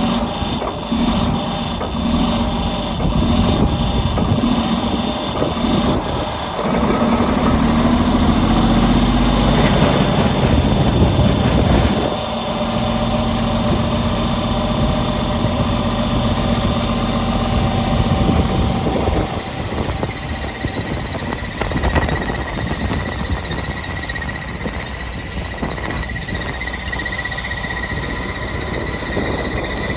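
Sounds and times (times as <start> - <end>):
grinder engine running: 0.0 - 29.9
high whine: 0.0 - 29.9.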